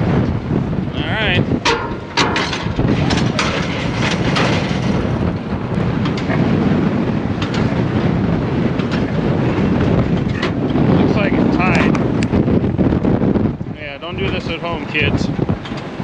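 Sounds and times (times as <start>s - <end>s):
baler mechanical rumble: 0.2s - 15.6s
clanking knocks: 1.6s - 6.4s.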